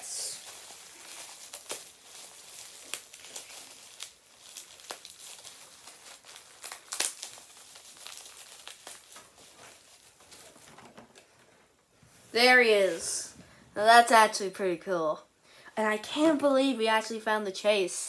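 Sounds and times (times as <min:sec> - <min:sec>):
plastic packaging crinkling: 0:00.0 - 0:11.8.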